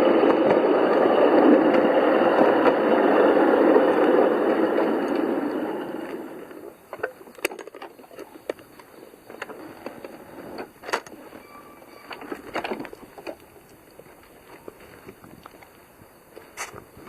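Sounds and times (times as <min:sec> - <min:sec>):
model train clicking on track: 0:00.0 - 0:17.0.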